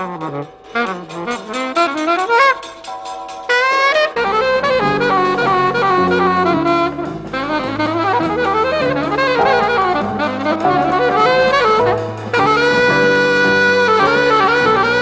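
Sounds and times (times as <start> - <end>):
saxophone-led jazz band: 0.0 - 15.0
walking bass line: 4.2 - 15.0.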